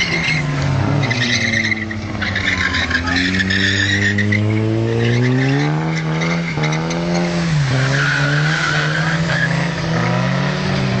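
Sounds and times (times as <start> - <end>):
tyres squealing: 0.0 - 9.8
car engine running hard: 0.0 - 11.0.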